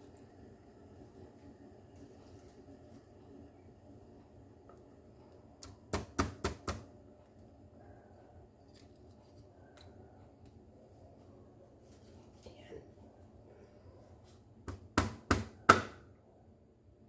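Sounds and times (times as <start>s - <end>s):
garlic being pounded: 5.9s - 6.8s, 14.6s - 16.1s.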